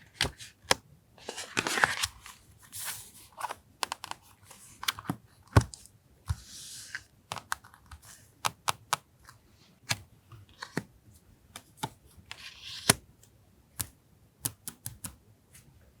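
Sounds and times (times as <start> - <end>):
paper rustling: 1.2 - 5.0.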